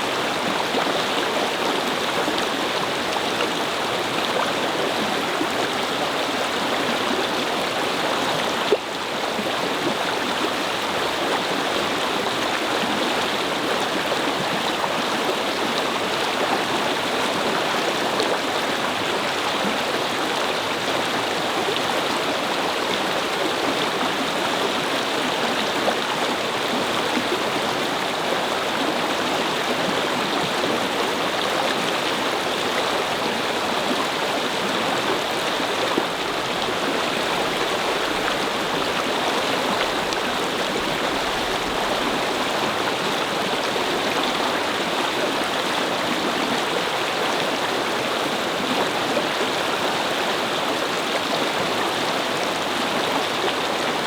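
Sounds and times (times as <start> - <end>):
brook babbling over stones: 0.0 - 54.0.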